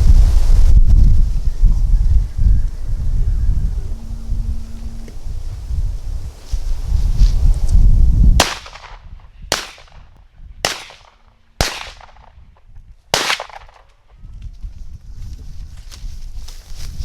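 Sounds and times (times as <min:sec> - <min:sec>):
wind rumble on microphone: 0:00.0 - 0:17.0
shotgun shots with echo: 0:08.4 - 0:10.0, 0:10.6 - 0:12.4, 0:13.2 - 0:13.9.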